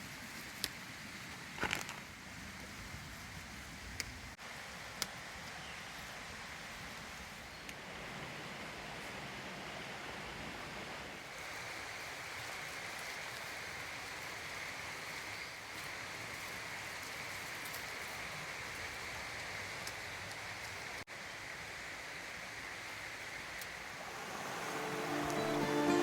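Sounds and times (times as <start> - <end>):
creek water running: 11.2 - 26.0.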